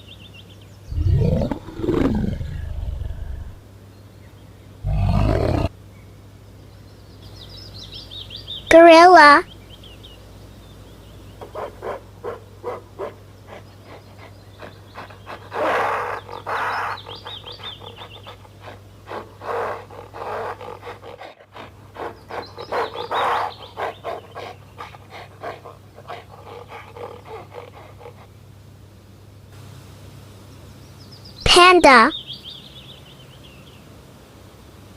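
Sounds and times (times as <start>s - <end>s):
gorilla panting hoots and screams: 0.9s - 3.6s, 13.0s - 28.3s.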